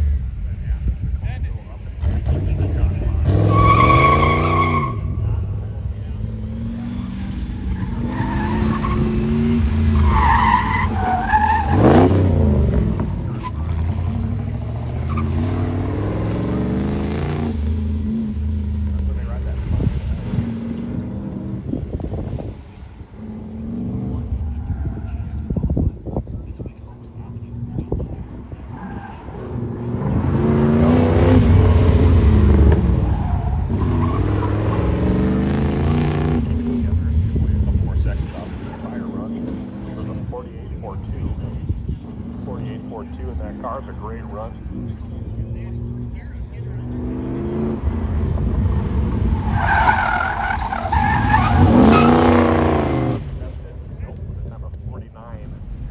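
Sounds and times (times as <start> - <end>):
car engine revving: 0.0 - 55.9
tyres squealing: 3.2 - 5.2, 7.3 - 13.7, 32.8 - 36.3, 47.1 - 53.4.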